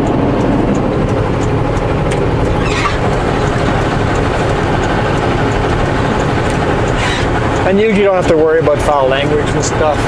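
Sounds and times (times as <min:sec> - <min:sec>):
road noise: 0:00.0 - 0:10.0
truck diesel engine rumble: 0:00.0 - 0:10.0
brief squeak: 0:02.6 - 0:03.0, 0:07.0 - 0:07.3.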